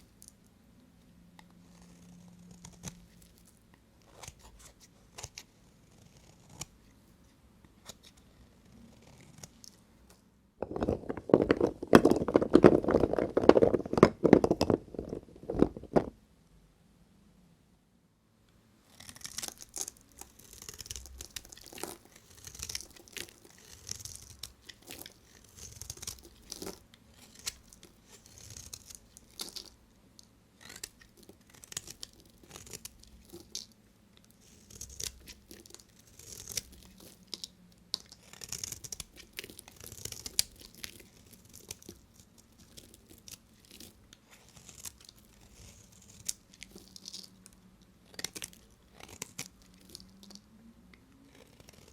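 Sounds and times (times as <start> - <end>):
blade crunching through soap: 10.6 - 16.1, 18.9 - 29.8, 30.6 - 47.4, 48.0 - 50.4, 51.3 - 51.9.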